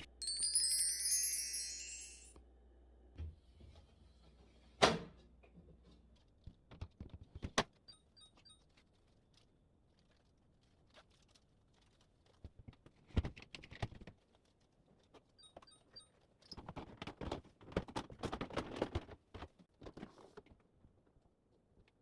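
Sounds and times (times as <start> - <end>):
shimmering chime: 0.1 - 2.4.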